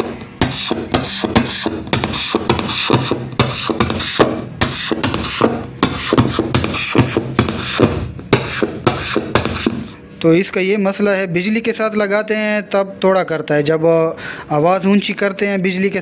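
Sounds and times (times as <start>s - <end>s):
distorted song on speaker: 0.0s - 10.2s.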